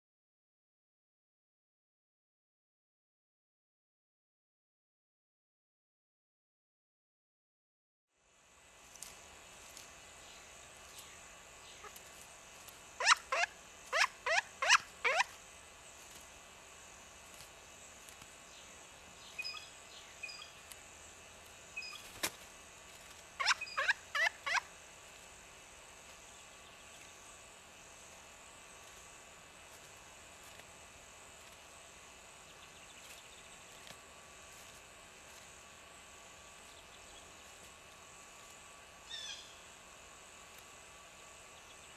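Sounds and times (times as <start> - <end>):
woodpecker calling: 10.2 - 15.4, 18.5 - 20.7, 21.7 - 22.3, 23.3 - 24.8, 39.0 - 39.7.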